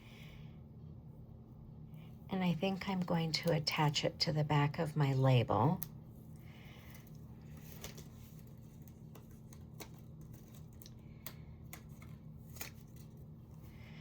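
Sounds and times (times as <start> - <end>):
steady low hum: 0.0 - 14.0
paper being handled: 6.7 - 13.6.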